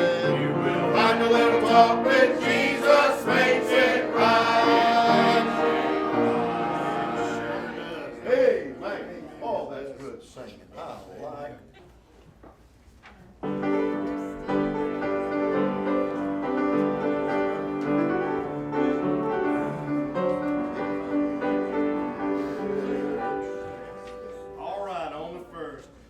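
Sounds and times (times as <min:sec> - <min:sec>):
piano playing hymn chords: 0:00.0 - 0:09.1, 0:13.4 - 0:24.6.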